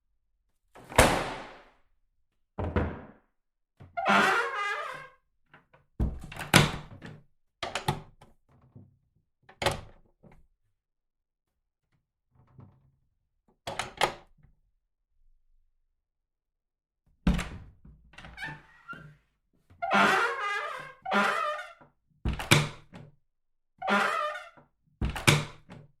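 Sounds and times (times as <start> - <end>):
door rattling and squeaking: 4.0 - 5.1, 19.8 - 23.0, 23.8 - 25.8.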